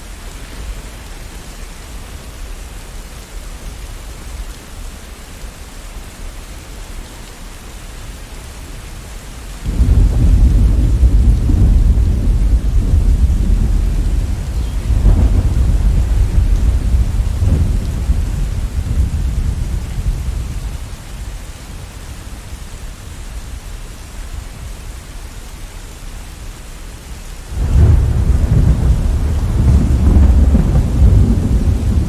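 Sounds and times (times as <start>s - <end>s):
steady rain: 0.0s - 32.0s
rolling thunder: 9.6s - 21.2s, 27.5s - 32.0s.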